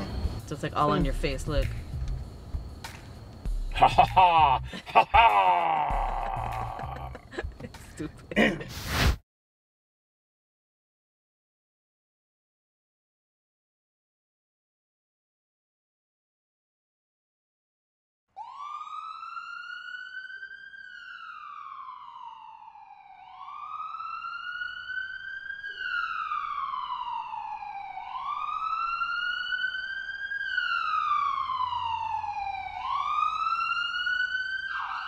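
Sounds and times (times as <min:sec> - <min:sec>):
emergency vehicle siren wailing: 0:03.9 - 0:07.5, 0:18.4 - 0:35.0.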